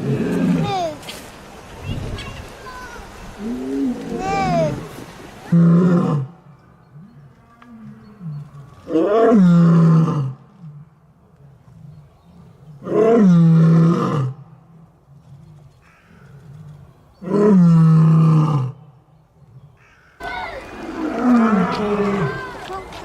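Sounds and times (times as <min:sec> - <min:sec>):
lion roaring: 0:20.8 - 0:22.4.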